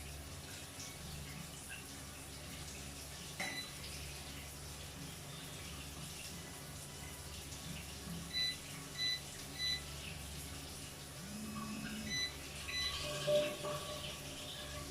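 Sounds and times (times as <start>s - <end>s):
running water: 0.0s - 14.9s
short electronic beeps: 8.3s - 9.8s, 11.3s - 13.5s.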